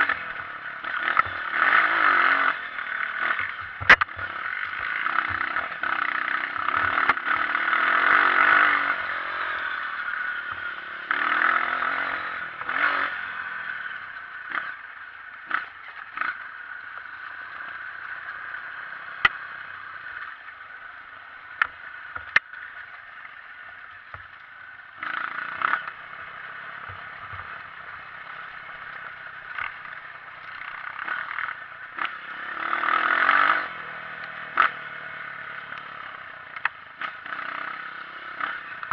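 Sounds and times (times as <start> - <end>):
dirt bike engine revving: 0.0 - 38.9.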